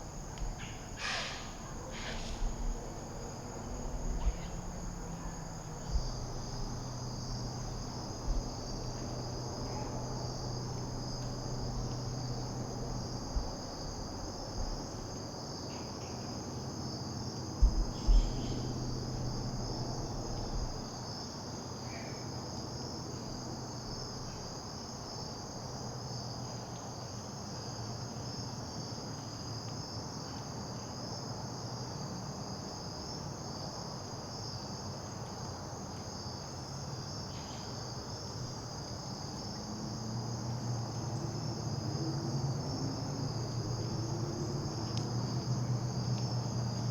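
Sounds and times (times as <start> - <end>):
crickets trilling: 0.0 - 46.9
low thumps: 2.3 - 9.6, 17.6 - 20.8.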